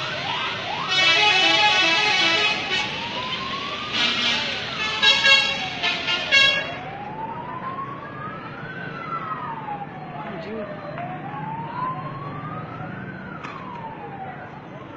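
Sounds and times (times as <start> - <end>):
siren-like wail: 0.0 - 14.9
multi-tone air horn blasts: 0.9 - 3.1, 4.0 - 6.8.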